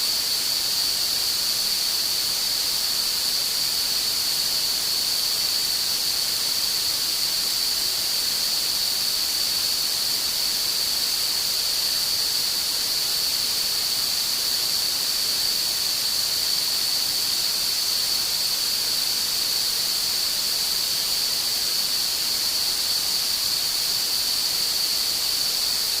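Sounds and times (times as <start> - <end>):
even hiss: 0.0 - 26.0.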